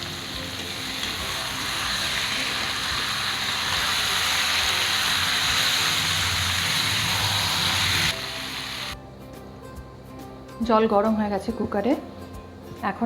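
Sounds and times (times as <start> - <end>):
chicken sizzling in hot oil: 0.0 - 9.0.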